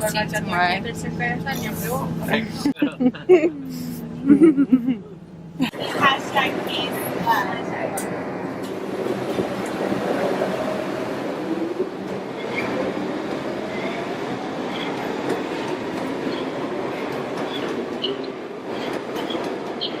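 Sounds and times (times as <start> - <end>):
subway train rumbling: 0.0 - 20.0
wheels squealing on rails: 12.2 - 20.0.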